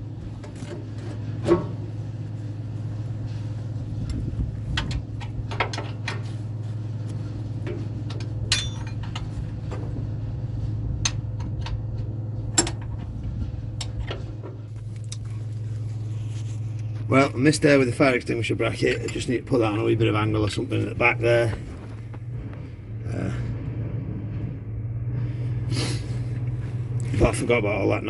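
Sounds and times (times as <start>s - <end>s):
sharp clicks and knocks: 4.1s - 6.3s, 7.6s - 10.0s, 11.0s - 13.2s.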